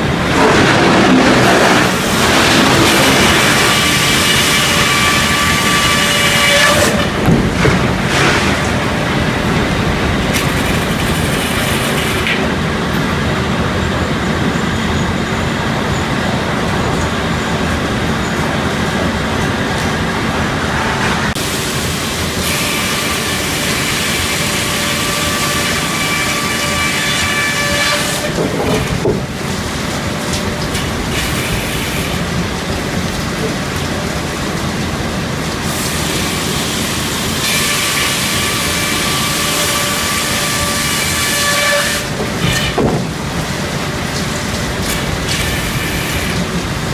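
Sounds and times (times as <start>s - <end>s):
circular saw cutting log: 0.3s - 9.0s, 21.3s - 29.2s, 35.7s - 43.0s, 44.9s - 46.5s.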